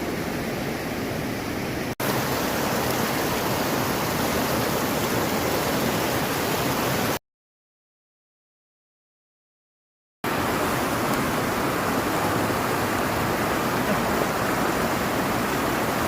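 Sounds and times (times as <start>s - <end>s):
fast-flowing water rushing: 0.0s - 7.2s, 10.3s - 16.0s.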